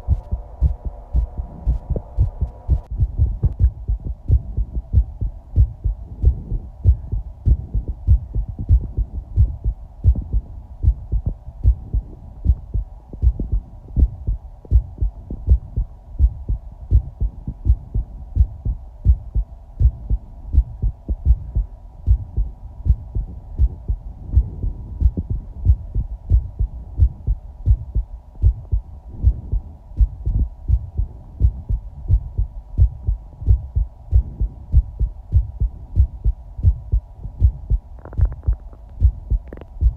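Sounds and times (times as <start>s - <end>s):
faint steady hum: 0.0s - 39.9s
heartbeat thumps: 0.0s - 39.9s.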